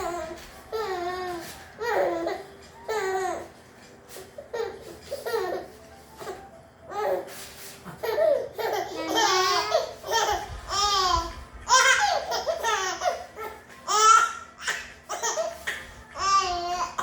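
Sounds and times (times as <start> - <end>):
small child laughing: 7.8 - 10.5.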